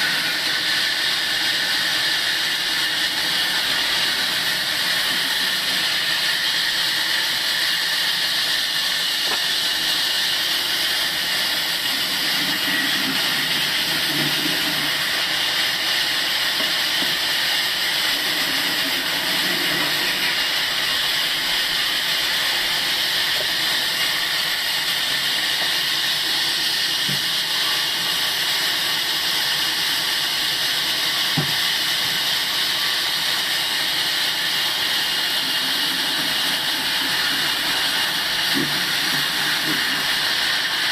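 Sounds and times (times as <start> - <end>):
sawmill blade cutting wood: 0.0 - 28.4.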